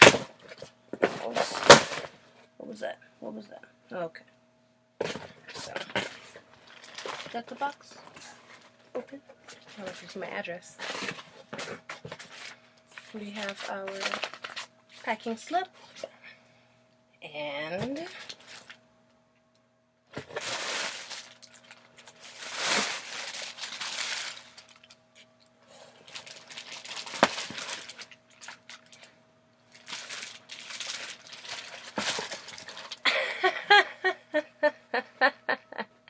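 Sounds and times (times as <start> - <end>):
paper packaging crinkling: 5.6 - 7.9, 9.5 - 15.2, 18.1 - 18.8, 20.2 - 25.0, 25.8 - 33.1.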